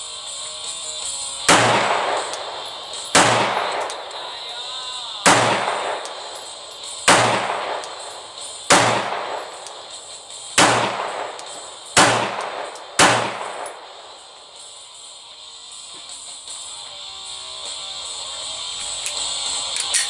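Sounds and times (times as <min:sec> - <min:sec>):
pistol shots echoing: 0:01.4 - 0:14.6.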